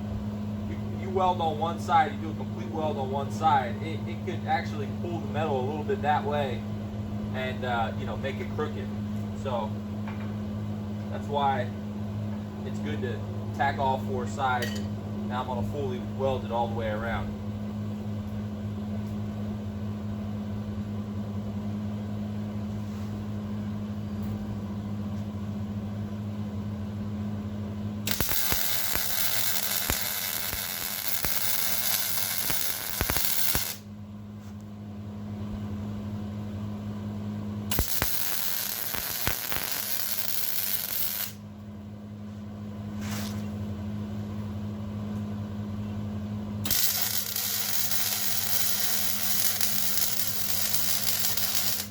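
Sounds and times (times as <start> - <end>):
steady low hum: 0.0 - 51.9
welding arc hissing: 28.1 - 33.8, 37.7 - 41.4, 46.6 - 51.9.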